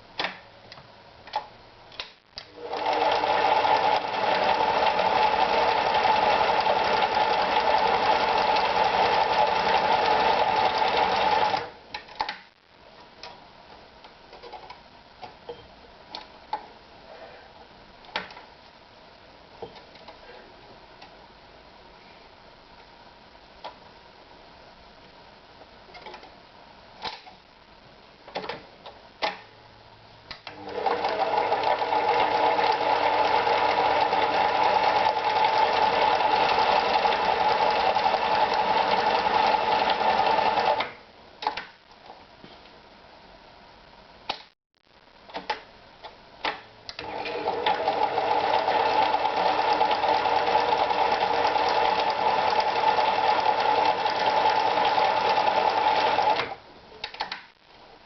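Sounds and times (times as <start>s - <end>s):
sewing machine stitching: 2.6s - 11.7s, 30.5s - 40.9s, 47.0s - 56.6s
clicks: 57.0s - 57.6s.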